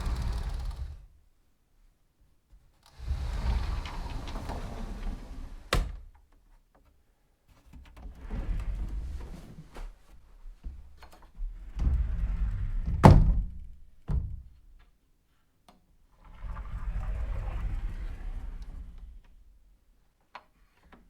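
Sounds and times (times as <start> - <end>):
sliding door rolling on track: 0.0 - 1.1, 2.9 - 5.9, 8.2 - 9.2, 11.7 - 13.0, 16.2 - 19.2
door banging shut: 12.8 - 14.5.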